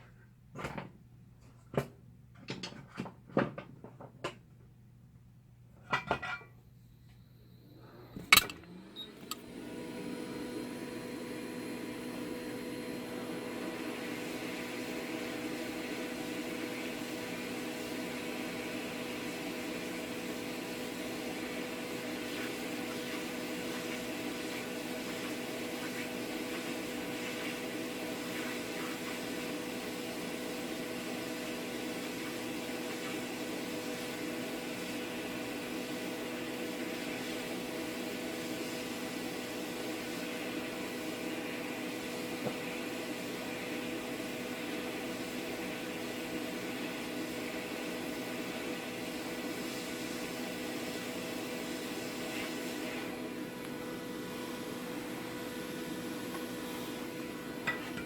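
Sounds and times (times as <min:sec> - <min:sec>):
switch click: 0:08.2 - 0:09.4.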